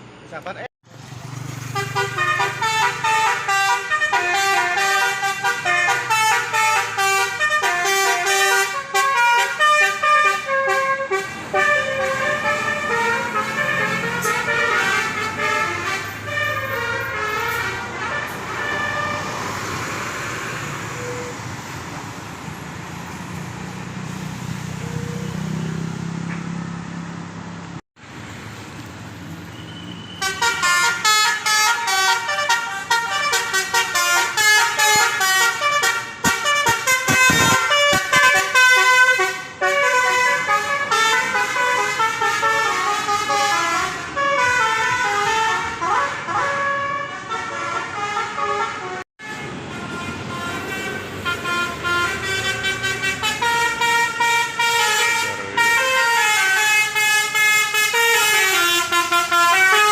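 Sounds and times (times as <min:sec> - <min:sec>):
road noise: 0:00.0 - 0:59.9
musical bus horn melody: 0:01.7 - 0:19.4, 0:20.8 - 0:21.4, 0:29.9 - 0:59.9
bus engine running: 0:49.2 - 0:59.8.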